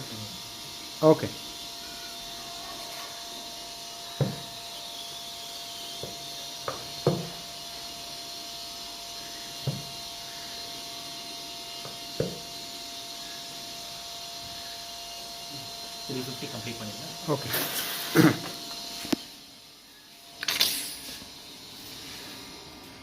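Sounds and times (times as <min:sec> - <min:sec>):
steady background hum: 0:00.0 - 0:23.0
faint constant tone: 0:18.1 - 0:23.0.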